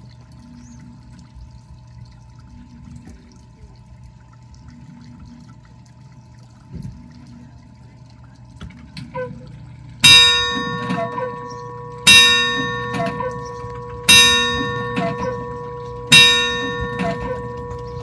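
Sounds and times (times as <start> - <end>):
large clock bell striking: 10.0 - 18.0.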